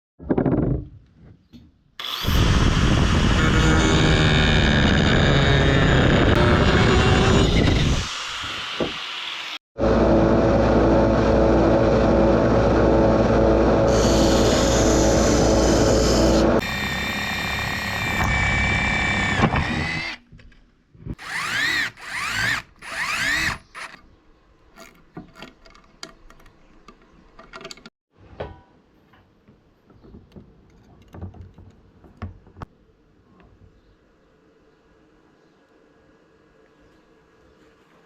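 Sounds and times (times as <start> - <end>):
power drill spinning: 2.0 - 9.6, 13.9 - 20.2, 21.1 - 24.0
tools and hardware clicking: 24.8 - 27.9.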